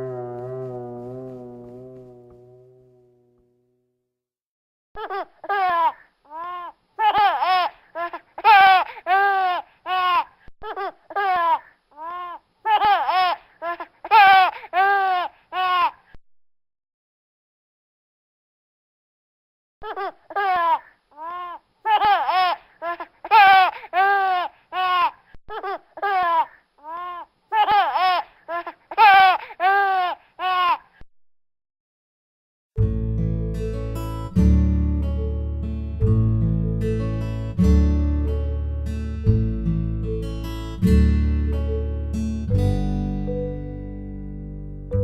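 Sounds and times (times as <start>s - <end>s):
baby laughing: 5.0s - 16.1s, 19.8s - 31.0s.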